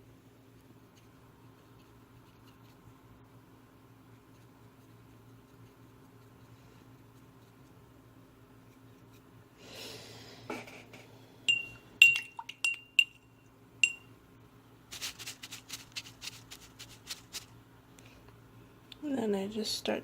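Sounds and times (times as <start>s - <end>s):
paintbrush scratching on plaster: 0.5s - 3.0s, 4.0s - 7.9s, 14.9s - 17.5s
glass clinks: 11.5s - 14.1s.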